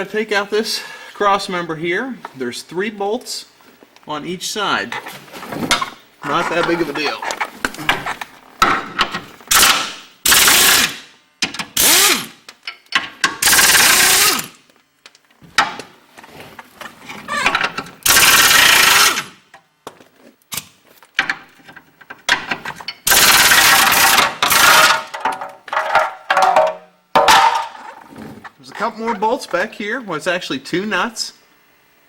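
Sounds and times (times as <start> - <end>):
impact wrench bursts: 9.5 - 12.4, 13.2 - 14.6, 17.4 - 19.4, 23.0 - 25.2.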